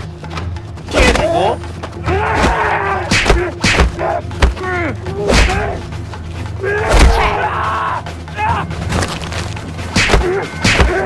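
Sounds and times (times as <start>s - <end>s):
fight thuds and slams: 6.9s - 7.4s, 8.9s - 11.0s.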